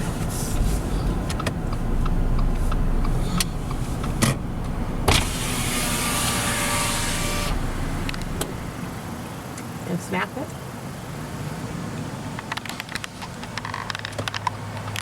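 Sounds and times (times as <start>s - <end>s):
road and engine rumble: 0.0s - 15.0s
sharp knocks: 2.4s - 9.0s.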